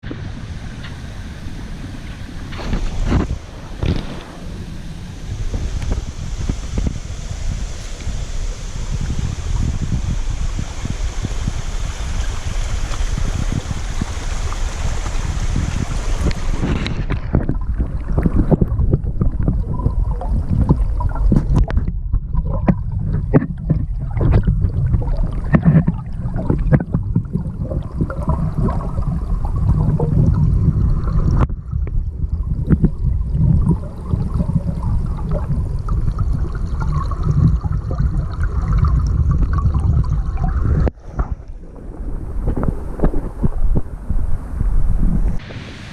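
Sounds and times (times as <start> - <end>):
steady rushing hiss: 0.0 - 17.1, 40.9 - 45.9
wind buffeting microphone: 0.0 - 45.9.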